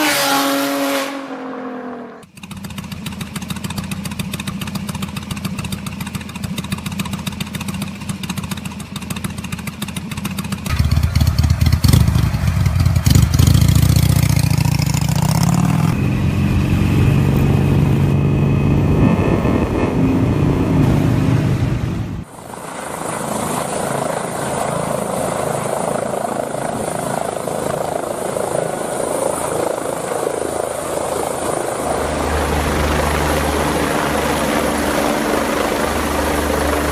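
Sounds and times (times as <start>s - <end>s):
motorcycle engine revving: 0.0s - 22.3s.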